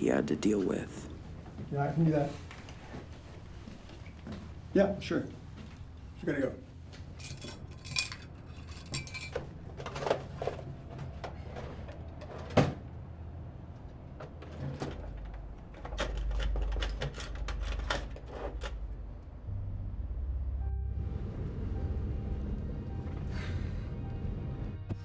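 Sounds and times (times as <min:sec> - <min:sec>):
clicks and knocks of handling: 0:14.2 - 0:18.8
low rumble: 0:18.9 - 0:25.0.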